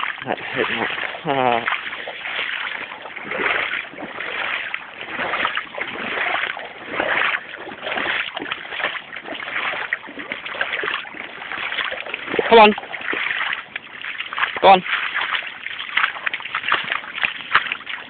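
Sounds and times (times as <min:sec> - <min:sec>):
boots wading through water: 0:00.0 - 0:18.0.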